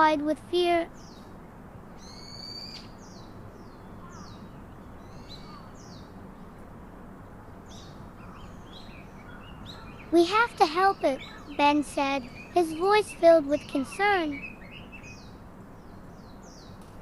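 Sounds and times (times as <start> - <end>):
low background hum: 0.0 - 17.0
small bird chirping: 2.0 - 6.1, 7.7 - 16.8.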